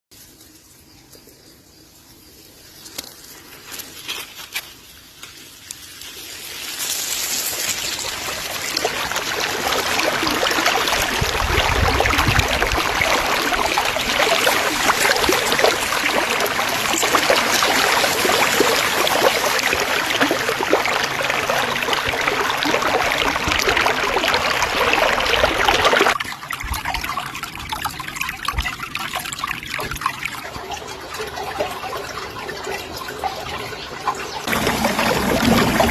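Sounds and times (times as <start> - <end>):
running water: 5.4 - 35.9.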